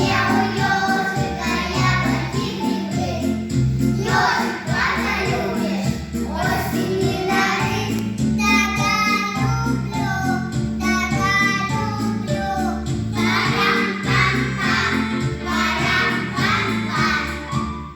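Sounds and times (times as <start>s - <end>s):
children singing in unison: 0.0s - 3.3s, 4.0s - 8.0s, 13.2s - 17.6s
instrumental accompaniment with beat: 0.0s - 17.9s.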